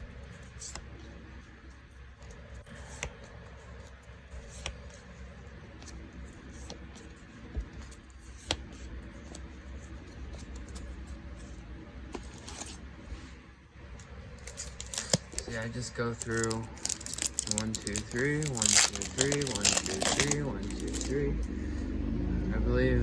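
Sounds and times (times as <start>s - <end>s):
low steady hum: 0.0s - 23.0s
cards sliding and snapping: 2.2s - 5.2s, 12.1s - 12.8s, 14.4s - 21.3s.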